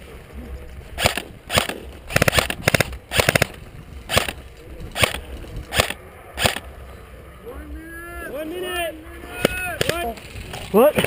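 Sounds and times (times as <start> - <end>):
airsoft rifle shots cracking: 1.0 - 6.7.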